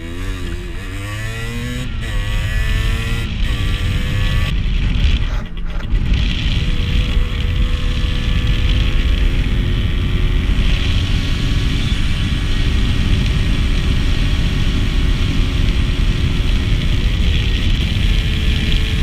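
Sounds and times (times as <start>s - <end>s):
motorcycle engine at high speed: 0.0s - 19.0s
wind rumble on microphone: 0.0s - 19.0s.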